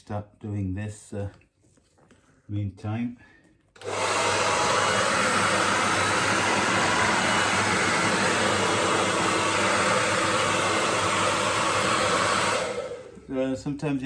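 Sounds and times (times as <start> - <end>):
hair dryer blowing: 3.8 - 13.3.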